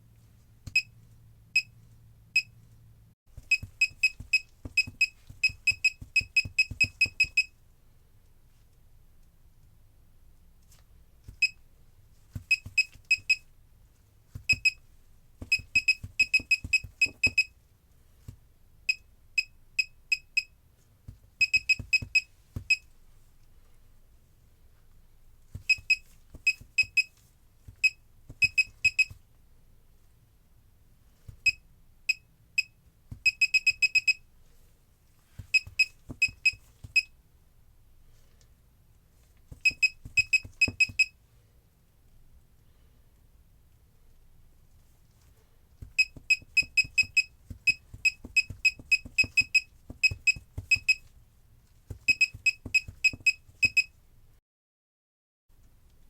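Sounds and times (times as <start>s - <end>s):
short high key-press beeps: 0.7s - 0.9s, 3.4s - 7.5s, 12.4s - 13.4s, 14.5s - 14.8s, 15.4s - 17.5s, 18.9s - 20.5s, 21.4s - 22.8s, 25.6s - 27.1s, 27.8s - 29.2s, 31.4s - 34.2s, 35.5s - 37.1s, 39.6s - 41.1s, 45.9s - 51.1s, 52.0s - 53.9s.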